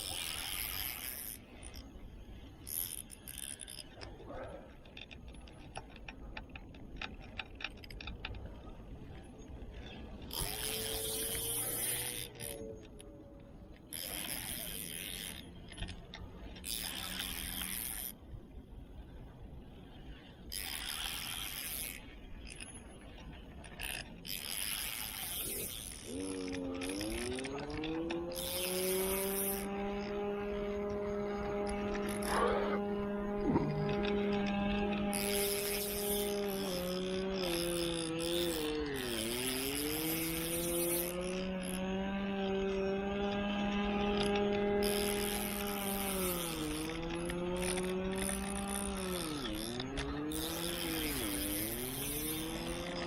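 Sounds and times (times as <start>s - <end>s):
fishing reel buzzing: 0.0s - 6.0s, 9.2s - 18.2s, 20.4s - 53.0s
engine running: 26.0s - 53.0s.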